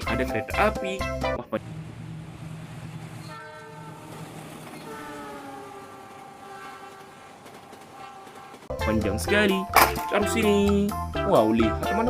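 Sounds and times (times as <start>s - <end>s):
steady low hum: 1.6s - 8.6s
toy train horn: 3.2s - 9.6s.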